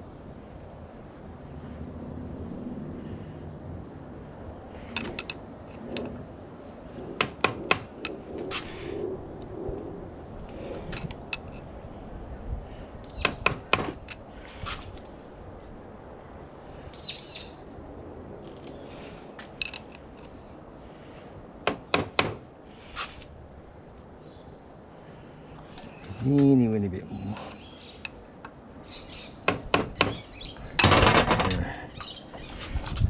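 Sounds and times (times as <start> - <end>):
bird chirping: 13.0 - 13.6, 15.1 - 17.6, 25.6 - 28.2, 28.8 - 30.8, 31.8 - 32.6.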